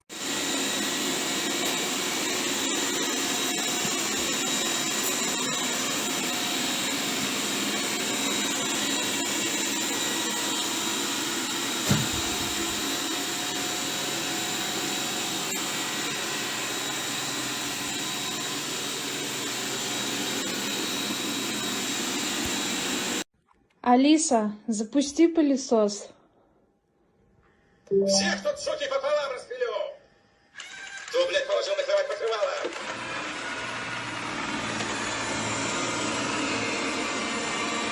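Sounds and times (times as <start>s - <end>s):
robot vacuum whirring: 0.1s - 23.2s, 32.7s - 37.9s.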